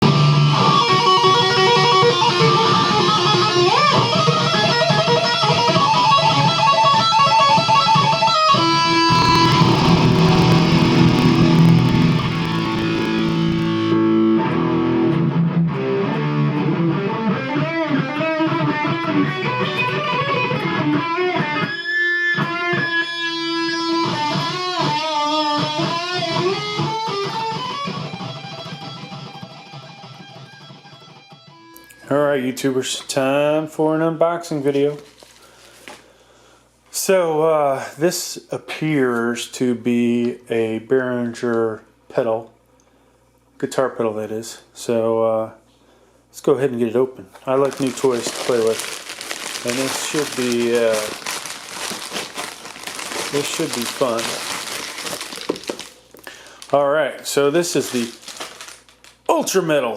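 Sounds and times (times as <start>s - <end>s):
electric guitar playing: 9.1s - 13.8s.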